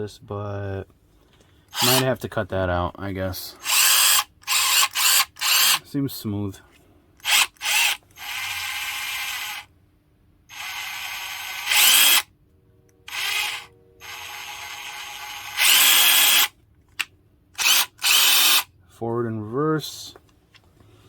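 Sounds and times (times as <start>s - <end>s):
cordless drill whirring: 1.7s - 2.1s, 3.6s - 5.8s, 7.2s - 9.7s, 10.5s - 12.3s, 13.1s - 16.5s, 17.6s - 18.7s.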